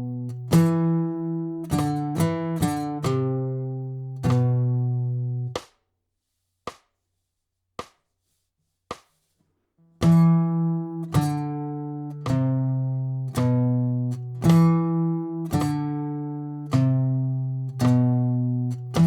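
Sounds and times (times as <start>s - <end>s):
guitar playing low notes: 0.0s - 5.6s, 10.0s - 19.0s.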